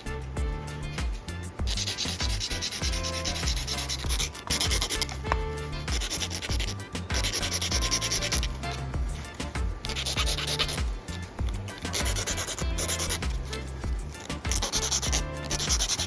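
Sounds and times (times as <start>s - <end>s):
abrasive rubbing like sanding: 0.0s - 16.0s
background music: 0.0s - 16.0s.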